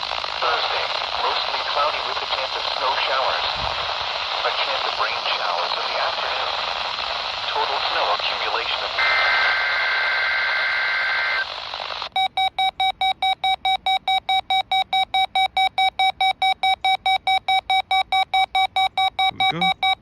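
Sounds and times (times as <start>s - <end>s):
radio static: 0.0s - 12.1s
rapid alarm beeps: 12.2s - 20.0s.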